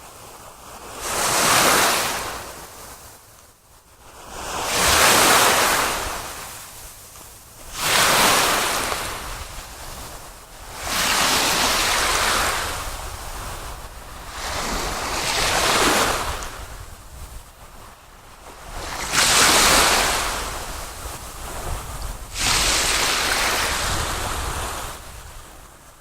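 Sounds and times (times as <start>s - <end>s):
sea waves washing in: 0.8s - 2.7s, 4.2s - 6.8s, 7.4s - 26.0s
low rumble of wind: 5.9s - 26.0s.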